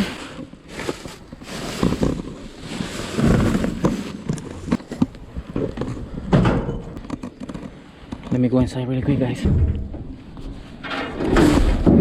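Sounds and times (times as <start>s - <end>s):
trash bags rustling and knocking: 0.0s - 7.1s.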